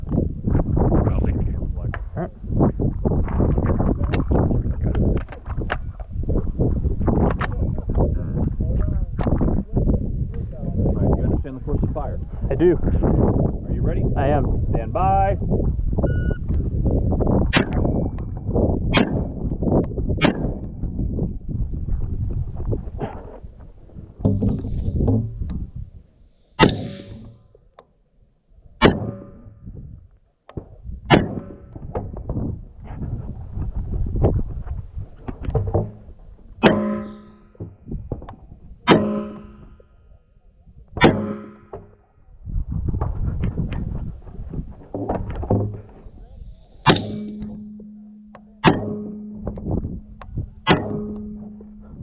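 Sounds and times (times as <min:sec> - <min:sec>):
wind rumbling on microphone: 0:00.0 - 0:27.8, 0:28.5 - 0:52.0
shot timer beep: 0:16.1 - 0:16.4, 0:36.6 - 0:37.5, 0:38.9 - 0:39.7
steel targets ringing: 0:26.6 - 0:27.4, 0:28.8 - 0:29.6, 0:36.6 - 0:37.7, 0:38.9 - 0:39.8, 0:41.0 - 0:42.0, 0:46.9 - 0:52.0.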